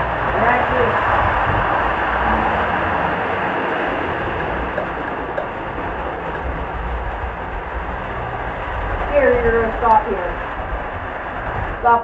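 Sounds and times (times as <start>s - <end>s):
model train running on track: 0.0s - 12.0s.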